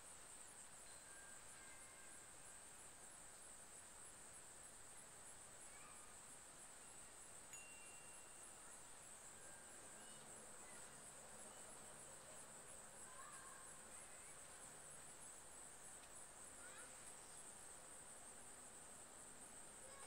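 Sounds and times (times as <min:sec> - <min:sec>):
faint chirps: 0:00.8 - 0:02.7, 0:05.6 - 0:14.7, 0:16.5 - 0:17.6.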